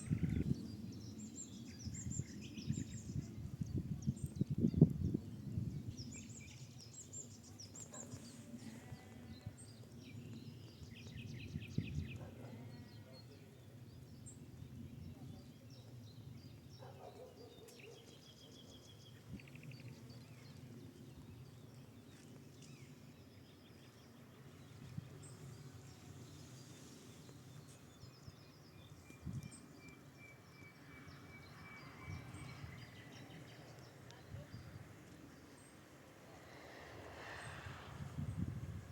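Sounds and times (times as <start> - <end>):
birds chirping and trilling: 0.0 - 3.3
low wind rumble: 0.0 - 12.4, 31.5 - 38.9.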